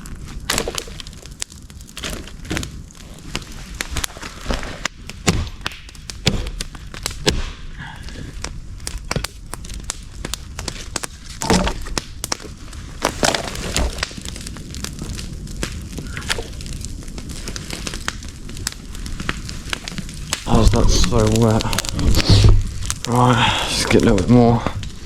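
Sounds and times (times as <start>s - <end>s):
sticks cracking and snapping: 0.4s - 23.3s
wood knocking on wood: 11.4s - 12.0s.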